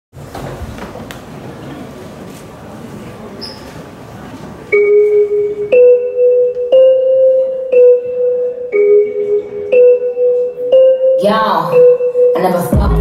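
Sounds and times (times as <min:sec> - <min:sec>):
crowd murmur: 0:00.2 - 0:10.8
bell-like keyboard note: 0:04.8 - 0:13.0
dance track: 0:11.2 - 0:13.0.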